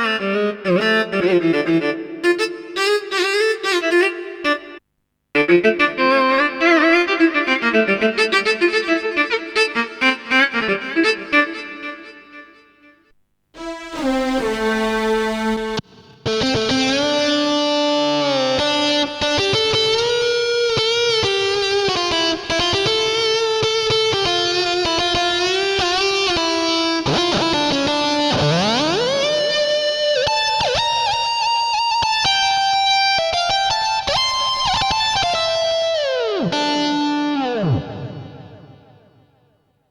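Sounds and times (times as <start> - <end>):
plucked string synth melody: 13.6 - 15.8.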